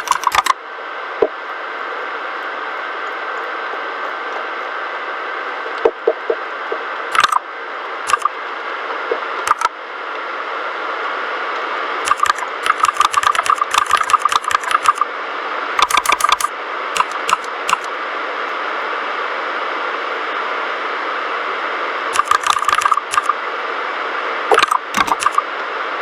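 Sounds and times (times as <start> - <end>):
mechanical keyboard typing: 0.0 - 0.5, 7.1 - 7.4, 8.1 - 8.3, 9.5 - 9.7, 12.1 - 15.0, 15.8 - 17.9, 22.2 - 23.4, 24.5 - 25.4.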